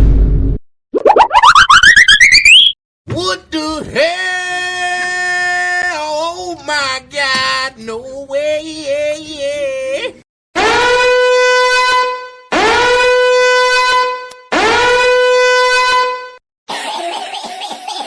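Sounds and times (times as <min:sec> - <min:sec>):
warbling pitched sound: 0:01.0 - 0:02.8
horn blasts: 0:10.6 - 0:16.4.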